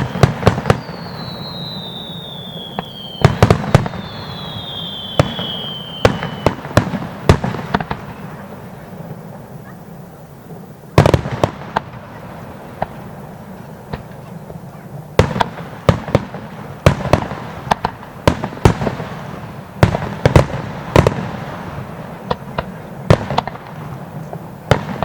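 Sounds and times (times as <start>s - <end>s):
fireworks bursting: 0.0s - 25.0s
high descending whistle: 0.8s - 6.6s.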